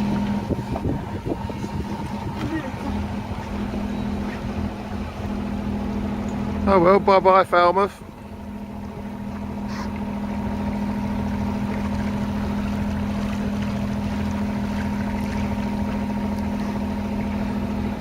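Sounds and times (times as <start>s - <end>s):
boat engine running: 0.0s - 18.0s.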